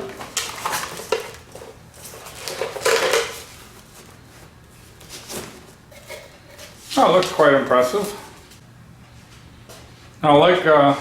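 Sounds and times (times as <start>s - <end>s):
metal clinks and packaging rustles: 0.4s - 3.5s.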